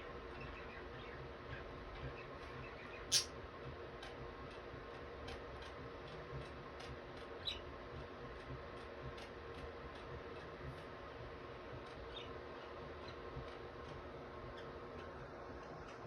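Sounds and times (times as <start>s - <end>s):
budgies clicking in cage: 2.0s - 3.3s.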